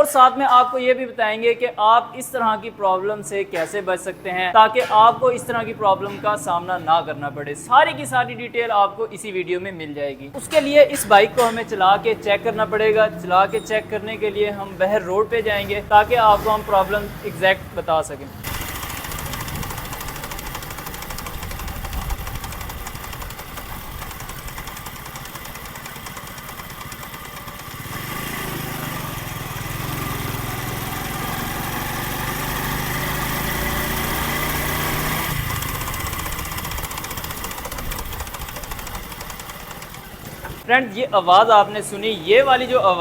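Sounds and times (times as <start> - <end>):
motorcycle engine running: 18.4 - 40.7
gear whine: 33.5 - 40.6.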